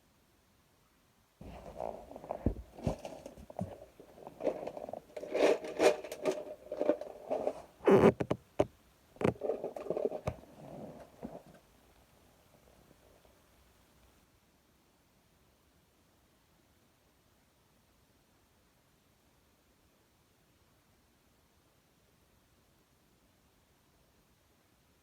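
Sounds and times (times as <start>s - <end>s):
tools scraping and rubbing metal: 1.4s - 8.3s, 9.2s - 11.6s.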